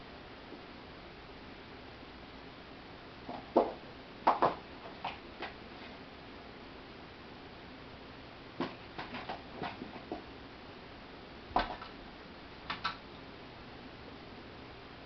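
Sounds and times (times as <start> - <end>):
toy and paws tapping on floor: 3.3 - 5.6.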